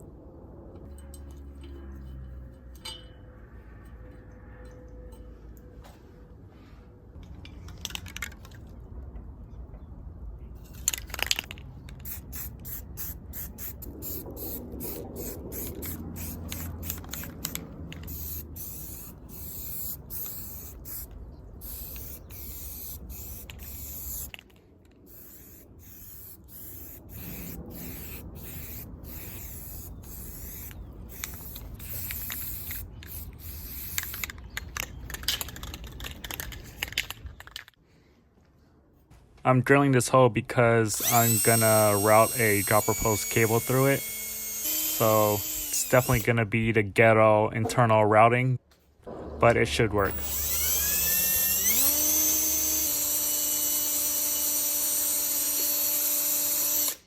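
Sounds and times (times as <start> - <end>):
spray-paint can hissing: 12.0 - 24.3, 25.1 - 34.4, 41.0 - 46.2.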